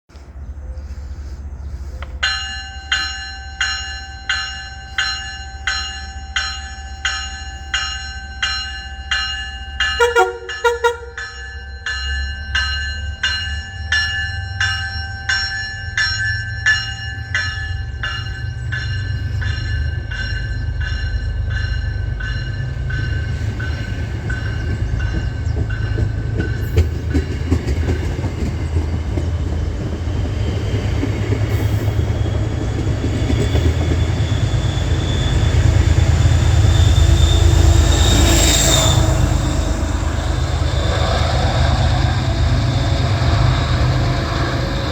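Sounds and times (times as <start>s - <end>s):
train wheels clacking on rails: 2.0s - 44.9s
warning bell ringing: 2.2s - 25.9s
train horn short blasts: 10.0s - 11.4s.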